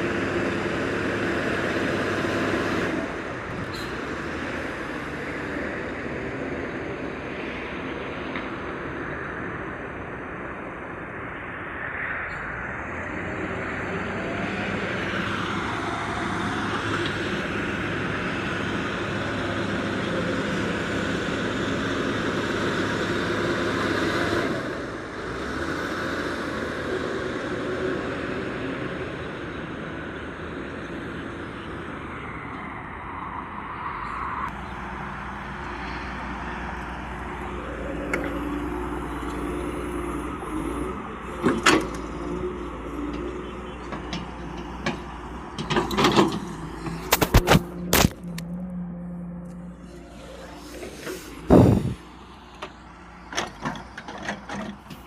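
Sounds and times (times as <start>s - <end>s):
heavy diesel engine running: 0.0s - 7.8s, 34.6s - 55.0s.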